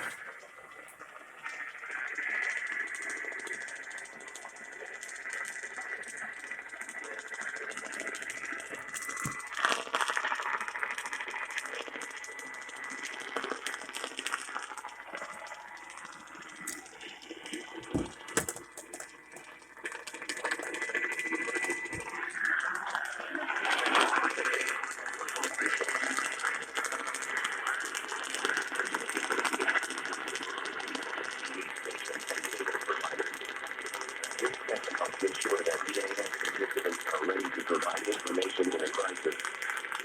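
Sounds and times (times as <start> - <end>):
radio hiss and static: 0.0 - 2.4, 20.4 - 29.8, 30.5 - 40.0
crackles and clicks: 0.0 - 40.0.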